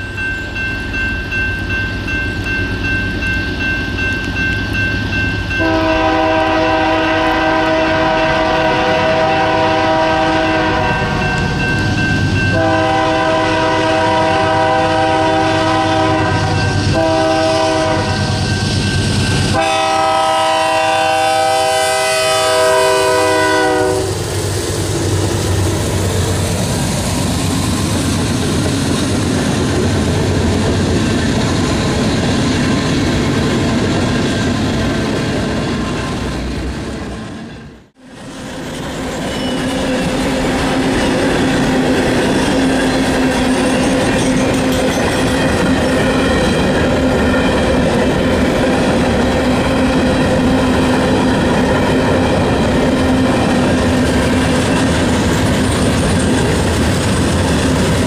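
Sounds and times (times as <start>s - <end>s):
locomotive air horn blasts: 5.6s - 11.4s, 12.5s - 18.4s, 19.5s - 24.2s
train wheels clattering on rails: 38.6s - 58.0s.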